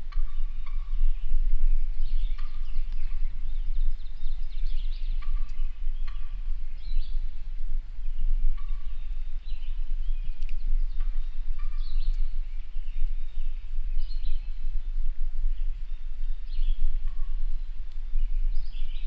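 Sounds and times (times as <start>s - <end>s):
birds calling: 0.0s - 7.3s, 8.1s - 19.0s
low rumble: 0.0s - 19.0s.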